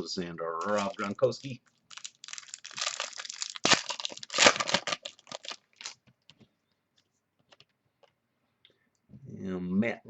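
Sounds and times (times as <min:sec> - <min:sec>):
foil pack tearing and crinkling: 0:00.6 - 0:06.0.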